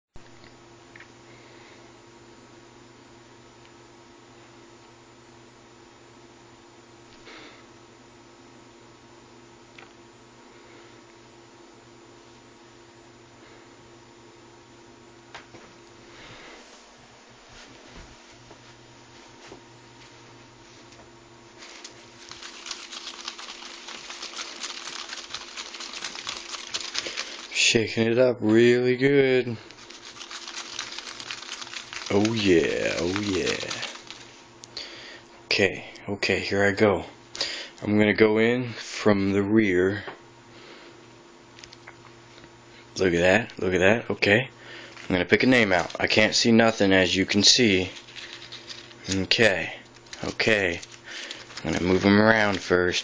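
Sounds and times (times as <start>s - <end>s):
paper slips rustling in container: 21.6s - 28.0s, 29.4s - 34.4s, 44.9s - 53.0s.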